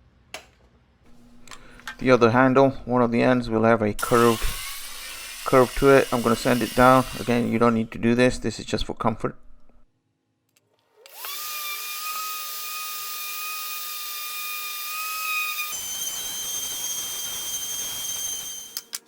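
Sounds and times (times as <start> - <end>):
electric sander whining: 4.0 - 7.8.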